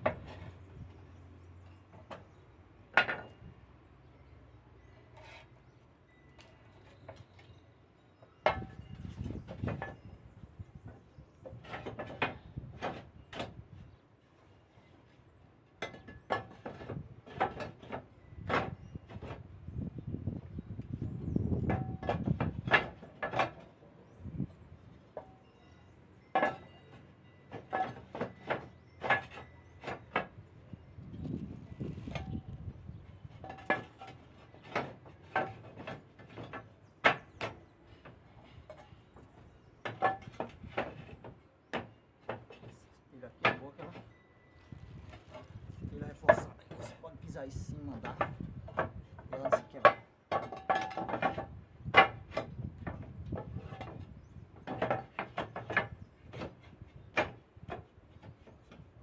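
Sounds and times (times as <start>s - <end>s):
roof repair knocks and clatters: 0.0s - 0.6s, 8.4s - 10.2s, 10.8s - 14.0s, 15.8s - 19.6s, 21.5s - 23.8s, 26.3s - 44.1s, 44.7s - 47.0s, 48.0s - 59.0s.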